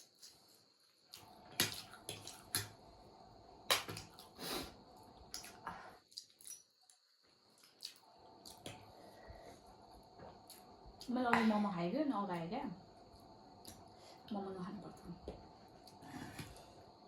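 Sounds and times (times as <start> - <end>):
wet chewing and mouth smacks: 5.3 - 8.8.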